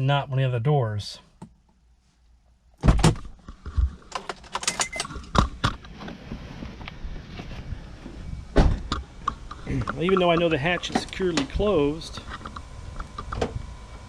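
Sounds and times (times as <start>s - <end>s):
steady background hiss: 4.0s - 14.0s
keys jingling: 4.1s - 5.2s.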